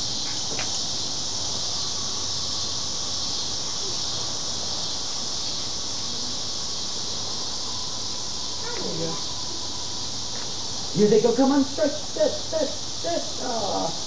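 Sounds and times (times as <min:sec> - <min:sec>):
insects chorus: 0:00.0 - 0:14.0.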